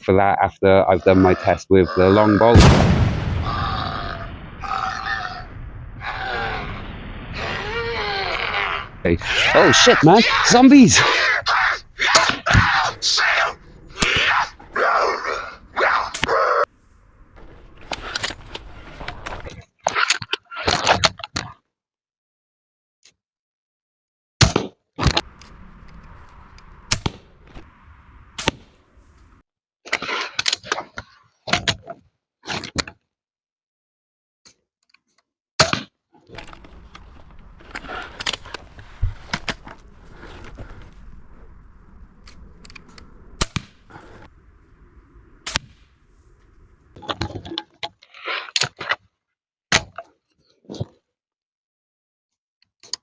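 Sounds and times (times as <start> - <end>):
crossbow shots cracking: 2.6 - 4.3.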